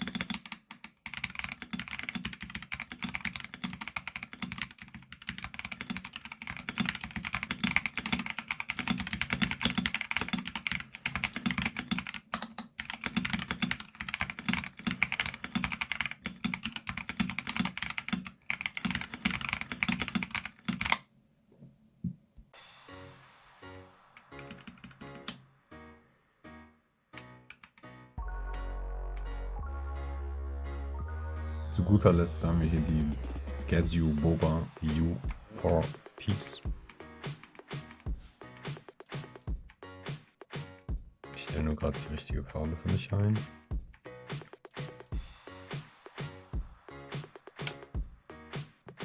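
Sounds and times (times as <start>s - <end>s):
fast typing on mechanical keyboard: 0.0s - 21.0s, 24.4s - 25.4s.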